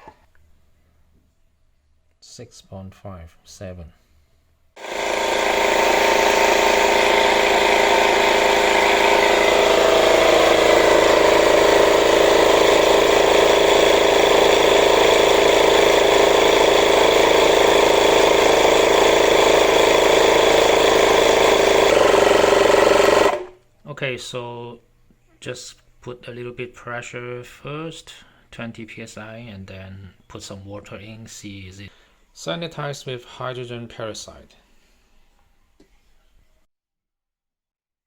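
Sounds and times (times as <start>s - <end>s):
electric air pump running: 4.8s - 23.6s.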